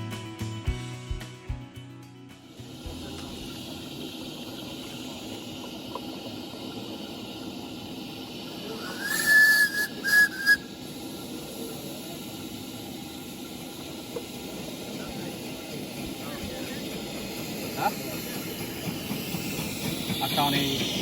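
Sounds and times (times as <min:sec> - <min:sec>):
steam whistle: 0:08.7 - 0:11.3.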